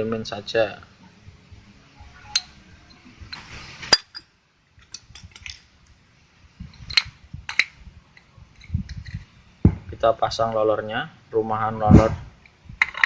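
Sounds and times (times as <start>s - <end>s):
metal scrape: 2.0s - 5.6s
metal tools clinking: 2.2s - 5.7s.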